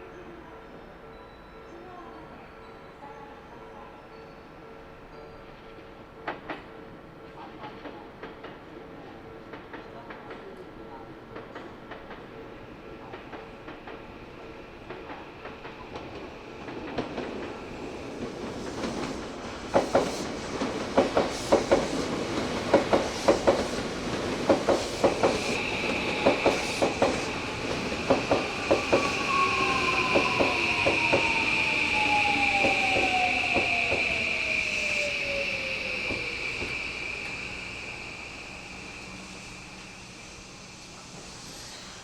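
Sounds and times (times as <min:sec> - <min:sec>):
train rumbling: 0:05.6 - 0:42.0
high steady squeal: 0:23.0 - 0:42.0.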